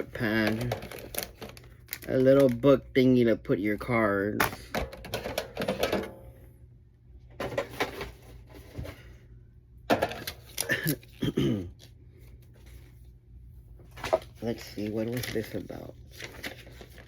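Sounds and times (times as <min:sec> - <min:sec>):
paper and card rustling: 0:00.0 - 0:02.8, 0:12.2 - 0:13.1, 0:13.8 - 0:17.0
low steady hum: 0:00.0 - 0:17.0.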